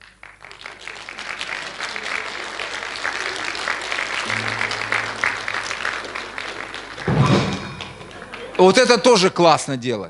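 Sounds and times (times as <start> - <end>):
crowd applauding: 0.0 - 9.8
low musical note: 4.2 - 8.3.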